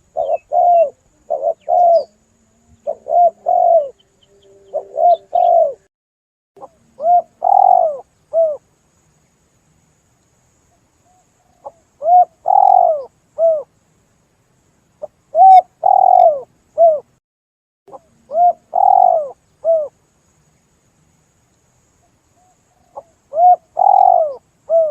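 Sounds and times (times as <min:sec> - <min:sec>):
dove cooing: 0:00.0 - 0:05.9, 0:06.6 - 0:08.6, 0:11.6 - 0:13.7, 0:15.3 - 0:17.1, 0:17.9 - 0:19.9, 0:22.7 - 0:24.9.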